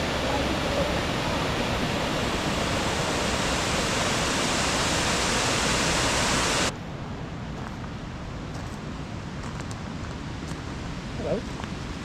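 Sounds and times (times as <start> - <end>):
waterfall rushing: 0.0 - 6.7.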